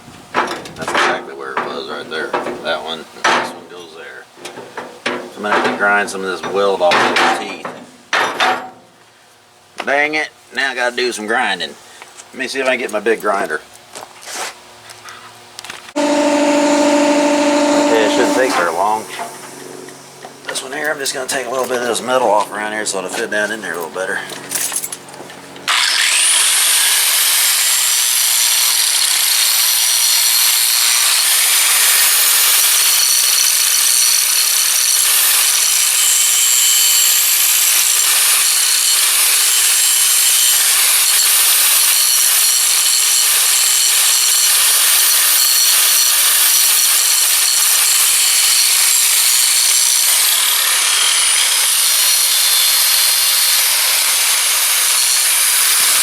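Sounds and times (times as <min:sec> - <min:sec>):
angle grinder grinding steel: 0:16.0 - 0:56.0.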